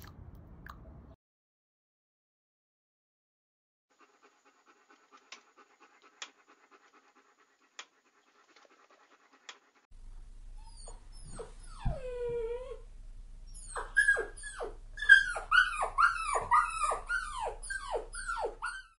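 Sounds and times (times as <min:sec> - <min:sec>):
puppy yelping: 0:10.6 - 0:12.8, 0:13.5 - 0:19.0
puppy whining: 0:10.6 - 0:12.9, 0:13.5 - 0:19.0.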